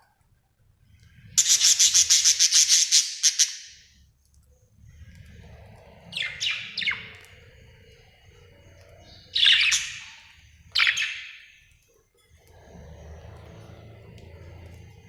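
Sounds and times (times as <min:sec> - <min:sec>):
budgerigar chirping: 0:01.4 - 0:03.8, 0:06.2 - 0:07.1, 0:09.0 - 0:11.6.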